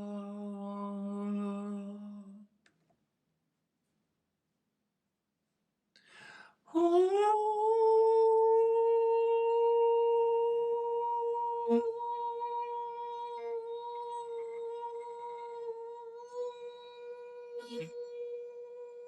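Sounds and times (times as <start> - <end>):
man toning long high note: 10.8 - 19.0.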